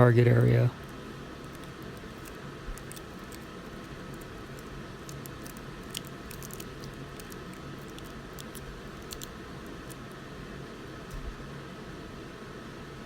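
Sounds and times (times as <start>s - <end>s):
steady background hum: 0.0s - 13.0s
tape crackling being handled: 0.8s - 10.2s.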